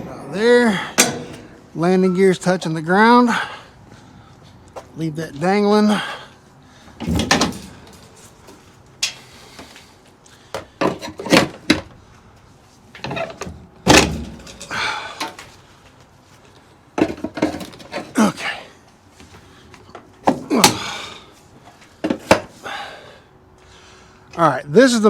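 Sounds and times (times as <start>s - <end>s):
metal hardware knocks and clanks: 0.9s - 1.7s, 7.0s - 8.2s, 9.0s - 9.3s, 12.9s - 15.5s.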